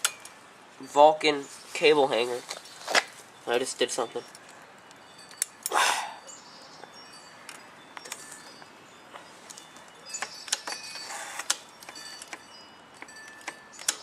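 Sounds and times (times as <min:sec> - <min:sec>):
light metallic clicks and clinks: 0:03.4 - 0:14.0.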